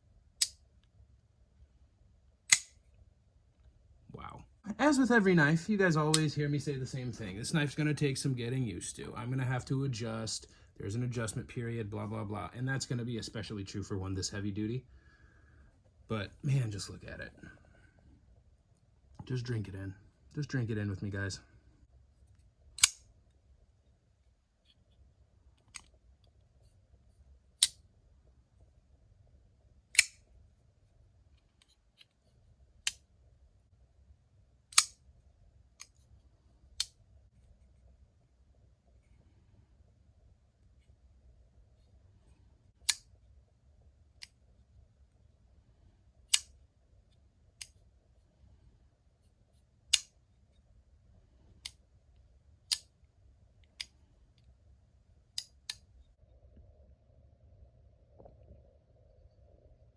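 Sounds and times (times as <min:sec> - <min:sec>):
folding knife clicking open and shut: 0:02.5 - 0:02.8, 0:22.8 - 0:23.0, 0:29.9 - 0:30.2, 0:34.7 - 0:35.0.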